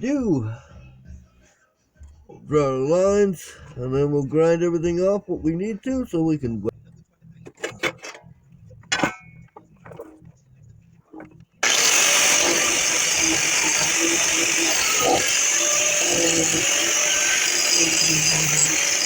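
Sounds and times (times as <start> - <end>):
angle grinder grinding steel: 11.6 - 19.0.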